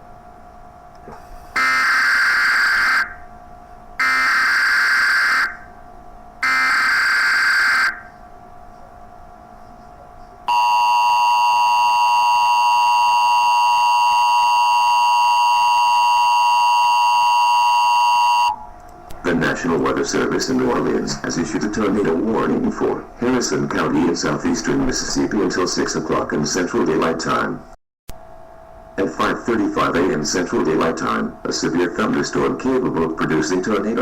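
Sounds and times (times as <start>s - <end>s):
steady two-tone alert signal: 1.6s - 3.2s, 4.0s - 5.6s, 6.4s - 8.1s, 10.5s - 18.6s.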